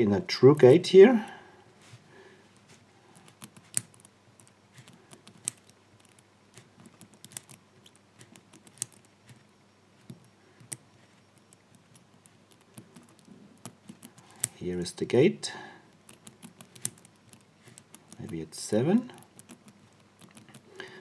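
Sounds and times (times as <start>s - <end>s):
padlock wheels clicking: 3.1s - 9.4s, 10.0s - 14.6s, 15.9s - 20.9s.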